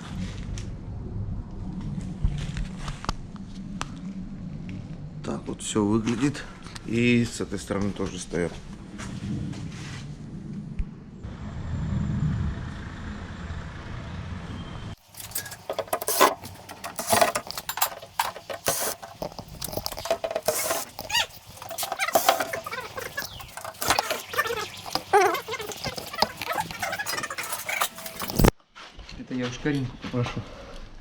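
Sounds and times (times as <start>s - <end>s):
metal tools clanking: 15.0s - 28.5s.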